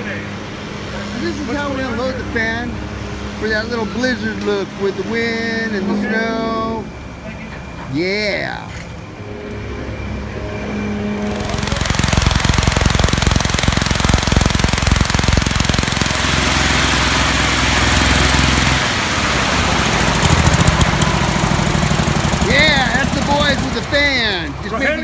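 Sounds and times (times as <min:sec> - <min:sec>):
large wind fan rushing air: 0:00.0 - 0:25.0
fast mechanical chatter: 0:11.2 - 0:25.0.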